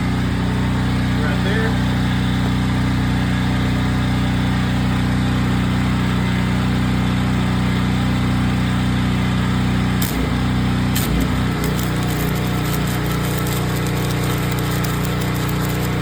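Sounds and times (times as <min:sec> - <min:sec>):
welder engine running: 0:00.0 - 0:16.0
welding arc crackling: 0:10.0 - 0:16.0.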